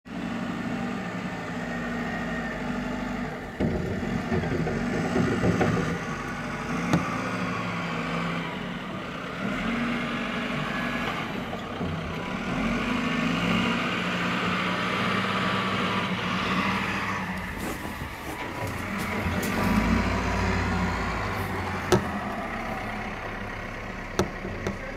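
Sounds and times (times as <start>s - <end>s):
truck engine running: 0.2s - 24.9s
sharp knocks: 3.6s - 6.2s, 21.5s - 22.5s.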